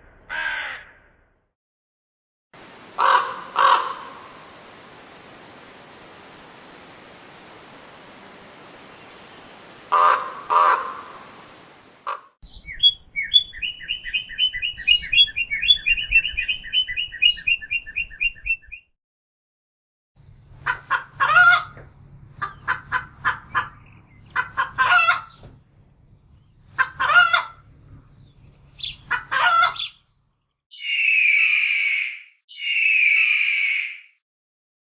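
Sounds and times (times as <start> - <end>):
raven croaks: 0.2 - 1.3, 3.0 - 4.4, 9.9 - 11.2, 30.8 - 34.1
cardinal chirping: 30.8 - 34.1
eagle's high cry: 30.8 - 34.1.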